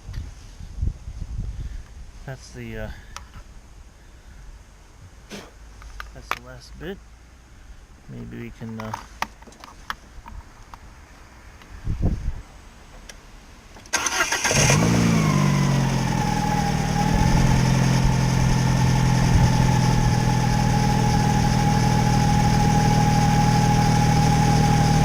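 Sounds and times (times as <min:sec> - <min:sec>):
car engine starting and idling: 0:13.9 - 0:25.0.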